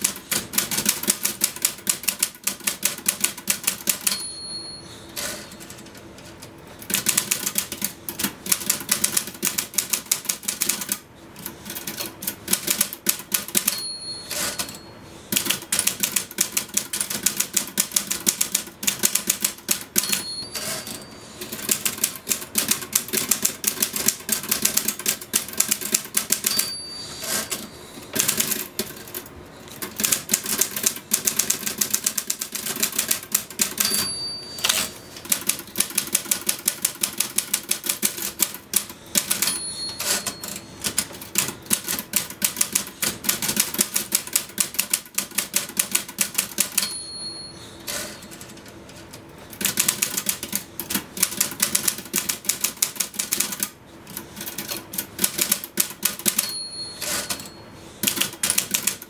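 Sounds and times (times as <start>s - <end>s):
typewriter keys clacking: 0.0s - 4.3s, 5.2s - 47.0s, 47.9s - 59.0s
typewriter bell ding: 3.8s - 5.7s, 13.4s - 15.0s, 19.2s - 21.5s, 26.2s - 27.7s, 33.6s - 35.8s, 39.0s - 41.0s, 46.5s - 48.4s, 55.4s - 57.7s.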